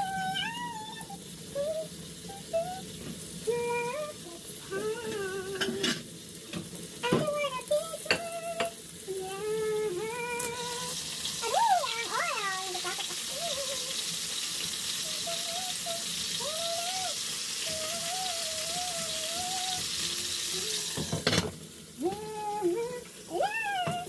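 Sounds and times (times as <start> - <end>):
person humming: 0.0 - 2.9, 3.5 - 6.0, 7.0 - 14.0, 15.0 - 21.2, 22.0 - 24.0
chicken frying in hot oil: 0.0 - 24.0.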